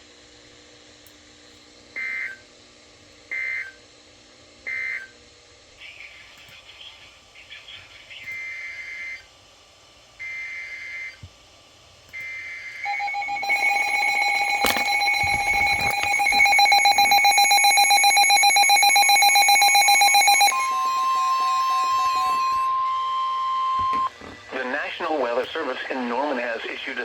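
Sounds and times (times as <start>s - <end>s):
rapidly pulsing alarm beep: 12.8s - 24.1s
steady warning alarm tone: 12.8s - 24.1s
digital data bursts: 12.9s - 22.9s.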